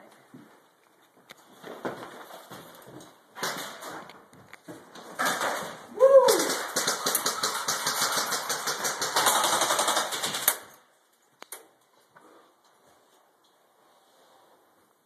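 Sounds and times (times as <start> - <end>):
airsoft gun full-auto burst: 6.4 - 10.7.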